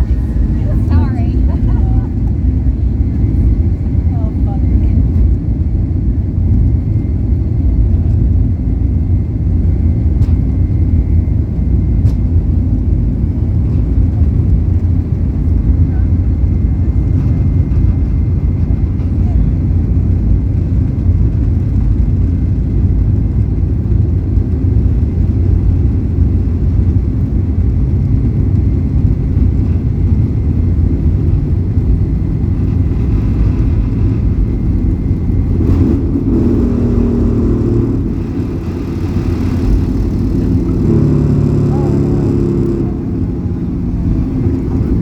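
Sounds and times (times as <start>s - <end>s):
jet engines rumbling: 0.0s - 45.0s
humming tones: 28.1s - 45.0s.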